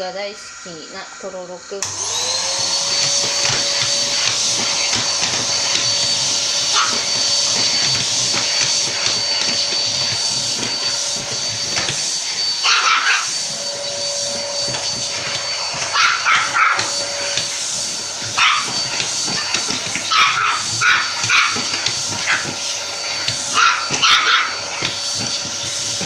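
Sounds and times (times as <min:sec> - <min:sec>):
vacuum cleaner running: 0:00.0 - 0:26.0
dog yipping and barking: 0:06.6 - 0:07.2, 0:12.6 - 0:13.4, 0:15.8 - 0:17.0, 0:18.3 - 0:22.5, 0:23.5 - 0:24.8.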